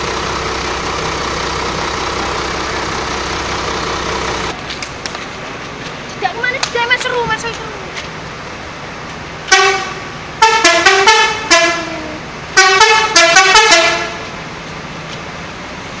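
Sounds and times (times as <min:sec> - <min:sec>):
musical bus horn tune: 0:09.5 - 0:14.4.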